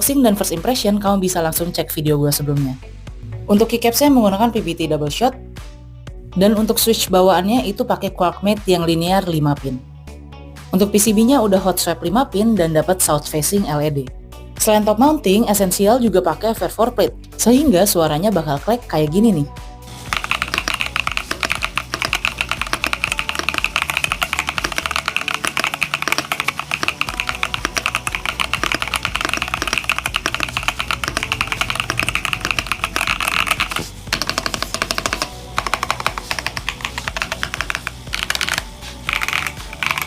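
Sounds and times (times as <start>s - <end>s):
fast typing on mechanical keyboard: 20.1s - 40.0s.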